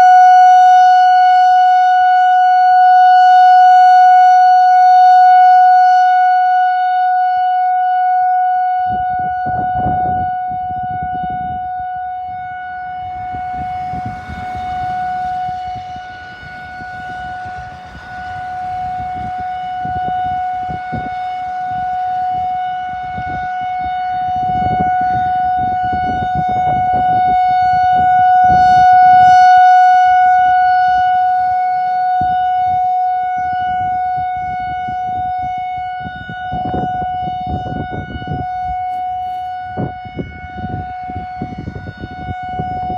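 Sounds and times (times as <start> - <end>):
steady warning siren tone: 0.0 - 42.9
low rumbling noise: 9.8 - 42.9.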